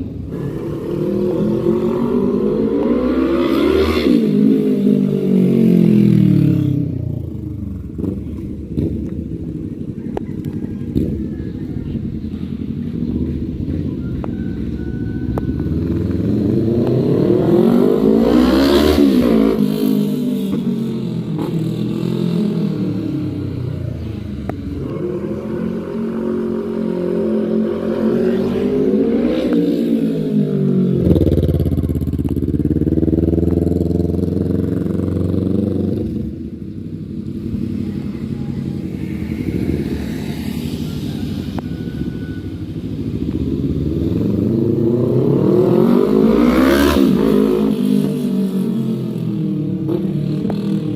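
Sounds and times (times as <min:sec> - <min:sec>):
motorcycle riding past: 0:00.0 - 0:50.9.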